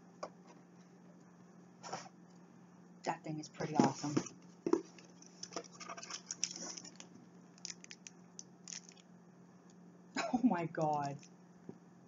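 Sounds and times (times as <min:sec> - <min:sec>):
packaging rustling: 0:04.8 - 0:09.0.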